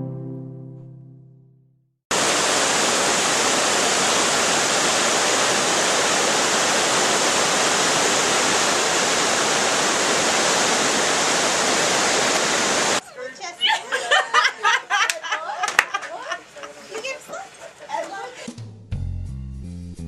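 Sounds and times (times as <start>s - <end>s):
falling water rushing: 2.1s - 13.0s.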